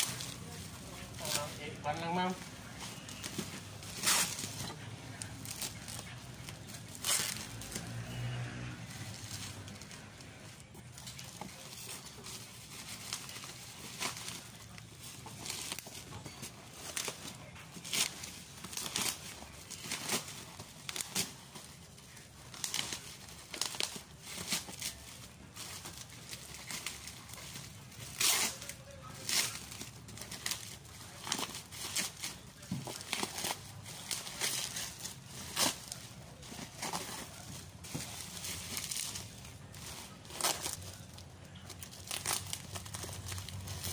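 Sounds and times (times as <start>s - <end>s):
plastic and paper crinkling: 0.0s - 43.9s.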